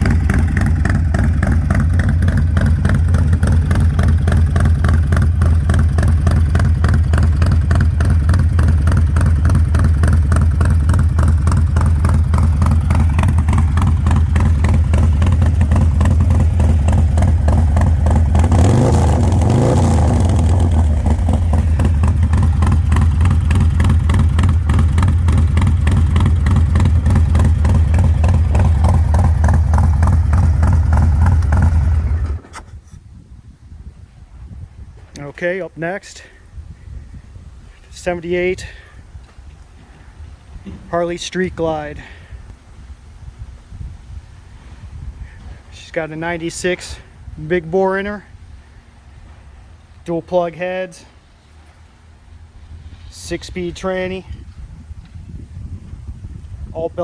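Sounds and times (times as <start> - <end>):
motorcycle engine idling: 0.0 - 32.5
motorcycle engine revving: 0.0 - 32.5.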